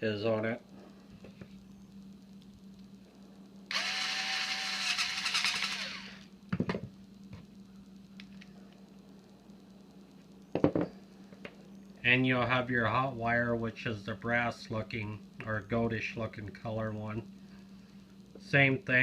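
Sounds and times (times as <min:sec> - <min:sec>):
cordless screwdriver running: 0:03.7 - 0:06.3.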